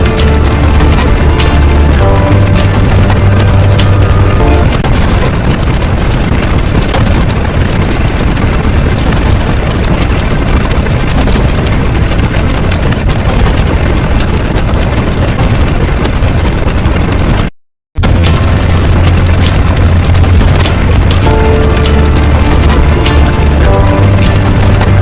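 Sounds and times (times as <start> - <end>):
loud low rumbling: 0.0 - 8.6, 18.0 - 25.0.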